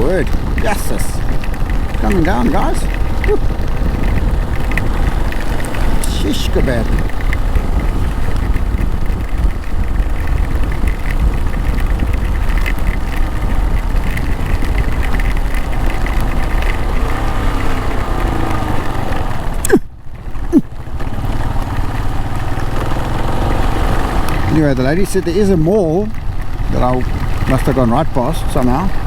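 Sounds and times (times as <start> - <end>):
motorcycle engine running: 0.0 - 29.0
wind and rain noise: 0.0 - 29.0.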